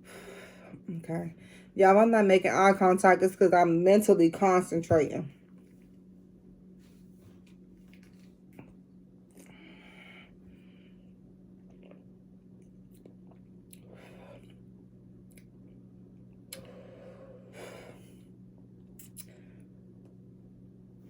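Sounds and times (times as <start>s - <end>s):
steady low hum: 0.0s - 21.0s
person sipping and swallowing: 11.6s - 12.2s
small mouth clicks: 19.0s - 19.4s.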